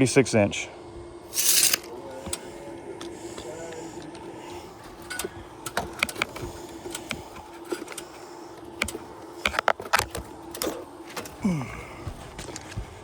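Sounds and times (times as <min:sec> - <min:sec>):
steady hum: 0:00.0 - 0:13.0
clicks and scrapes on shingle roof: 0:04.8 - 0:11.4, 0:12.0 - 0:13.0.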